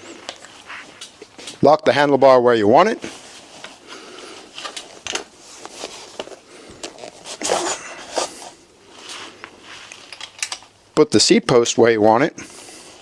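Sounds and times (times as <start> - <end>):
folding bike metallic clicks and rattles: 9.9 - 10.7.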